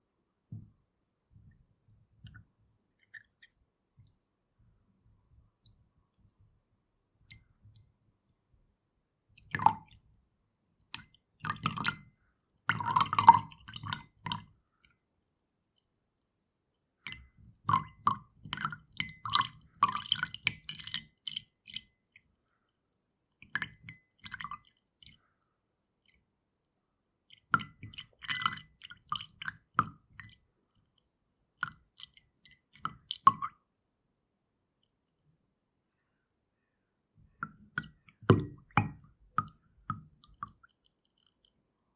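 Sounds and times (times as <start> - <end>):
milk pouring into a glass: 9.3 - 33.6, 35.8 - 41.7.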